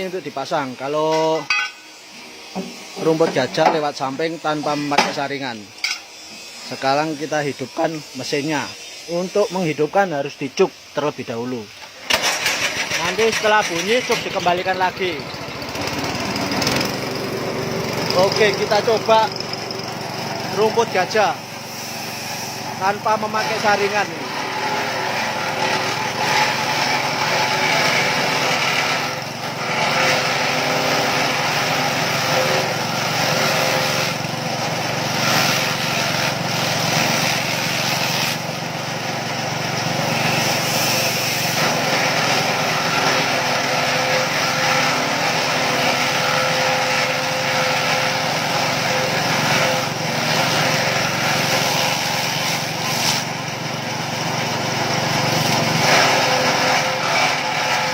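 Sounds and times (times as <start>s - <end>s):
small petrol engine running: 11.9s - 57.9s
blades shredding grass: 54.2s - 57.9s.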